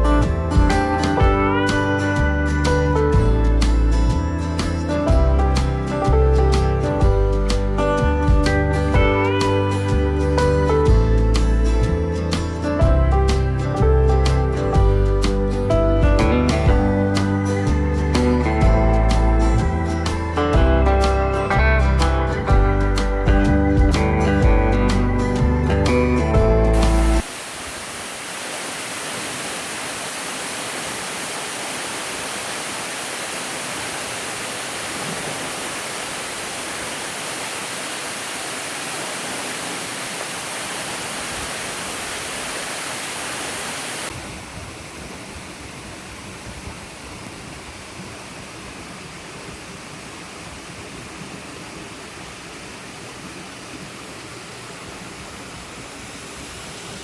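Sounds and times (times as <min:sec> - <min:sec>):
waterfall rushing: 0:26.8 - 0:57.0.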